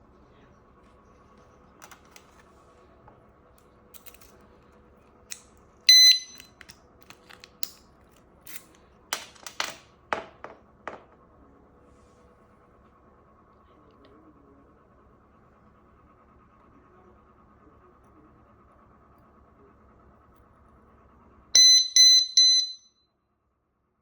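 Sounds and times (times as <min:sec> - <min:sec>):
short high electronic beep: 0:05.9 - 0:06.4, 0:21.6 - 0:22.9.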